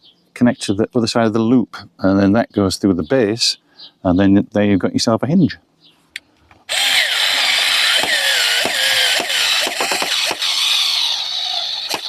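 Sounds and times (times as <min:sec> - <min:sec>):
sharp clicks: 0:06.2 - 0:12.0
power drill driving a screw: 0:06.7 - 0:12.0.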